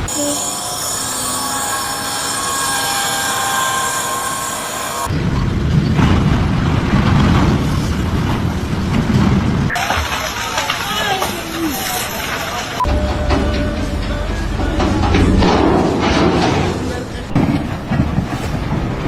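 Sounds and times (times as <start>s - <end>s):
high metallic squeal over hiss: 0.0s - 5.1s
loud low rumbling: 12.8s - 19.0s.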